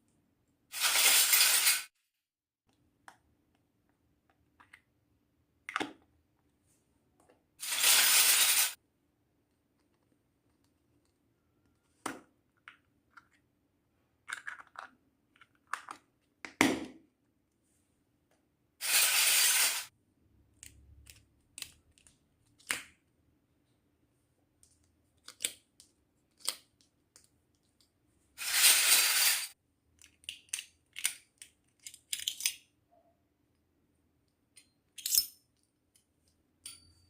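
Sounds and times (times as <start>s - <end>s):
toy kitchen pieces clinking: 0.8s - 1.9s, 7.6s - 8.8s, 28.4s - 32.7s, 34.5s - 37.0s.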